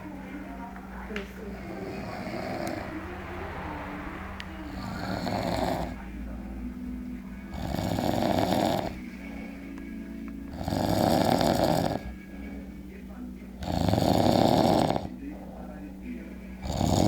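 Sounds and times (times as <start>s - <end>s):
pet snoring: 1.5s - 3.1s, 4.6s - 6.1s, 7.5s - 9.1s, 10.5s - 12.3s, 13.6s - 15.2s, 16.6s - 17.0s.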